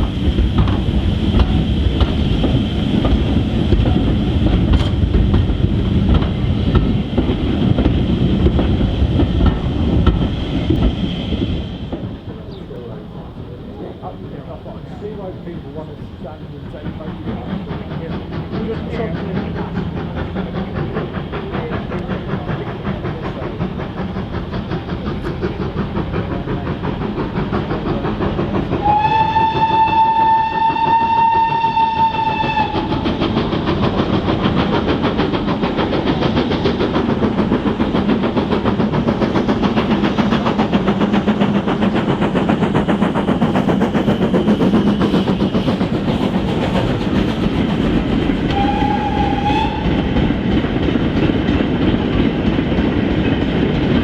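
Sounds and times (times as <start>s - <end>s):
steam locomotive chuffing: 0.0s - 54.0s
locomotive whistle blast: 28.8s - 32.9s, 48.5s - 50.0s.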